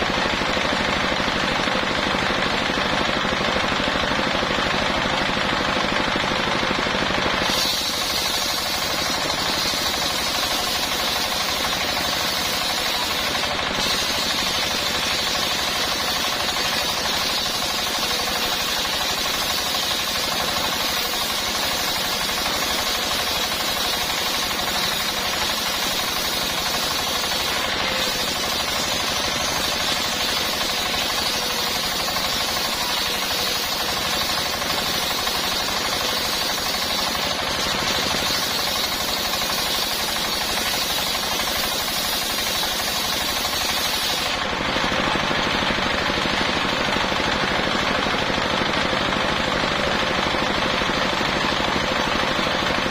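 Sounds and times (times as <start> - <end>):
circular saw cutting wood: 7.2 - 47.6.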